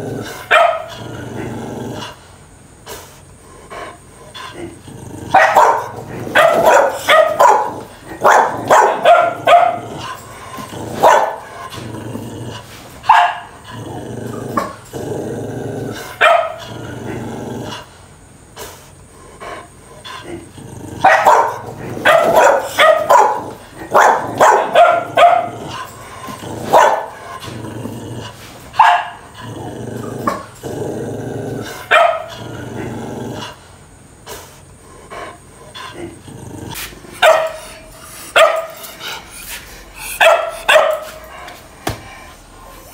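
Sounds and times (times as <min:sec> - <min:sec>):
dogs growling: 0:00.0 - 0:42.9
dogs barking: 0:00.3 - 0:01.0, 0:05.3 - 0:11.8, 0:13.0 - 0:13.6, 0:16.0 - 0:16.8, 0:21.0 - 0:27.6, 0:28.7 - 0:29.3, 0:31.8 - 0:32.4, 0:37.1 - 0:42.9.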